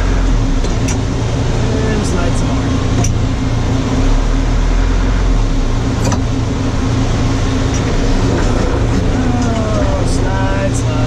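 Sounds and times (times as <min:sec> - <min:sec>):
backhoe engine humming: 0:00.0 - 0:11.0.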